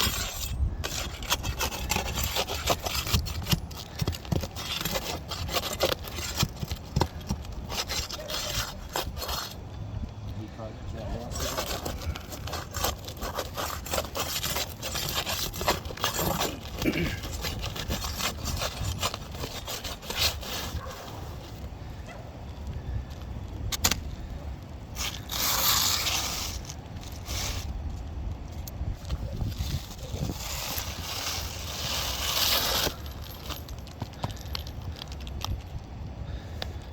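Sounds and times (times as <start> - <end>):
scraping and rubbing: 0.0 - 9.7, 11.0 - 21.7, 24.9 - 27.8, 28.6 - 35.6.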